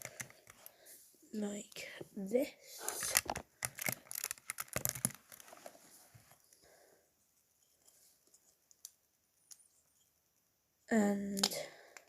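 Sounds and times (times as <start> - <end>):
plastic bricks clicking: 2.9 - 5.4.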